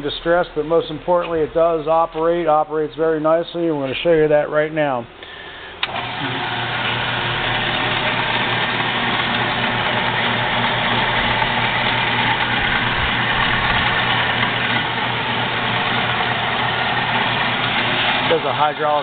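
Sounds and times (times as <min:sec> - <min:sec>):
band saw motor hum: 0:05.2 - 0:19.0
band saw blade whirring: 0:05.8 - 0:19.0.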